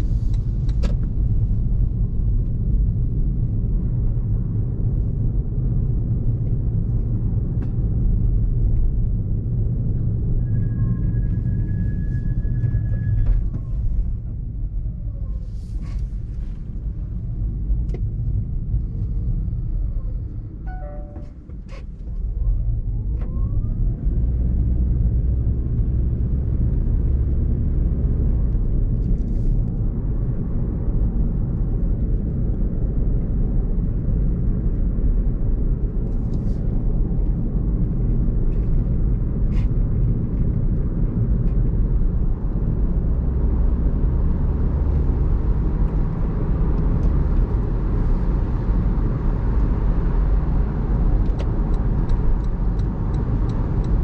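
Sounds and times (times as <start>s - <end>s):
car rumbling on wet road: 22.7s - 54.0s.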